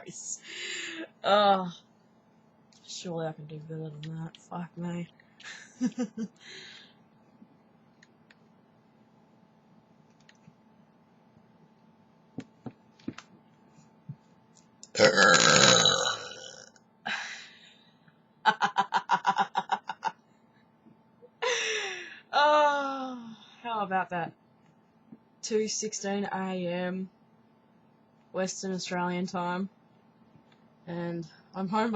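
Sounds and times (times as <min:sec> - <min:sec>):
long loud burp: 0:14.9 - 0:16.8.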